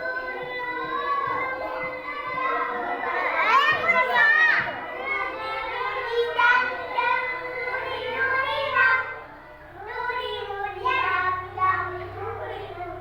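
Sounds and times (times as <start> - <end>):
young children singing: 0.0 - 13.0.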